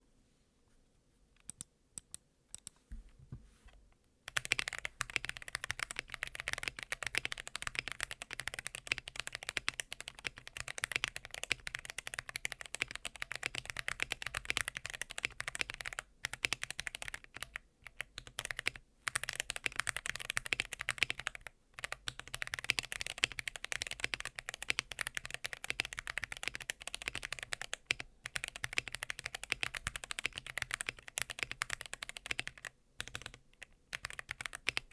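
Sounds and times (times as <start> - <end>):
fast mechanical keyboard typing: 4.3 - 34.9.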